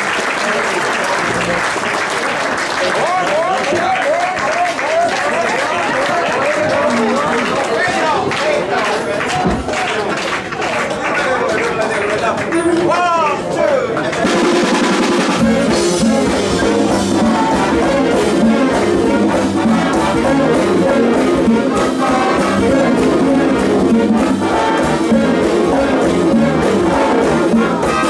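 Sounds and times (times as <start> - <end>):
big band swing music: 4.4 - 8.5, 14.0 - 28.0.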